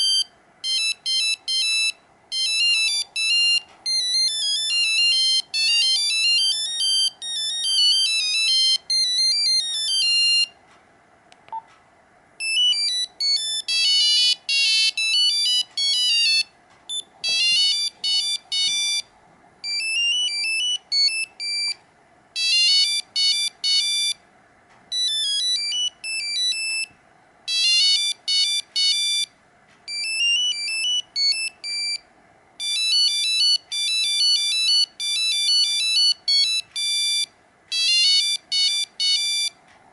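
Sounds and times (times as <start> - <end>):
monophonic phone ringtone: 0.0 - 10.5, 12.4 - 21.8, 22.4 - 24.2, 24.9 - 26.9, 27.5 - 29.3, 29.9 - 32.0, 32.6 - 39.6.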